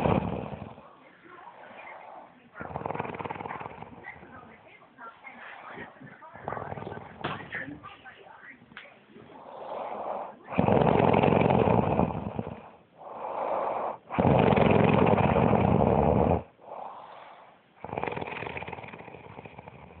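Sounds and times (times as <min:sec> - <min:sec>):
woman snoring: 0:00.0 - 0:00.8, 0:01.8 - 0:04.1, 0:09.3 - 0:20.0
quiet breaths: 0:00.0 - 0:20.0.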